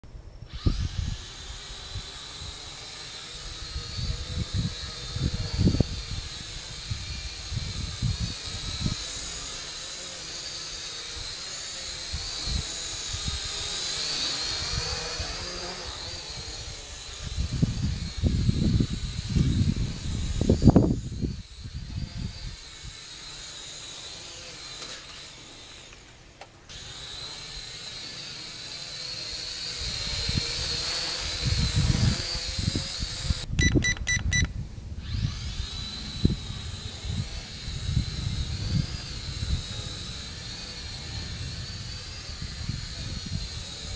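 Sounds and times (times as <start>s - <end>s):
toy quadcopter motors whining: 0.0s - 43.9s
wind gusting over microphone: 0.4s - 9.3s, 12.0s - 23.0s, 29.7s - 43.9s.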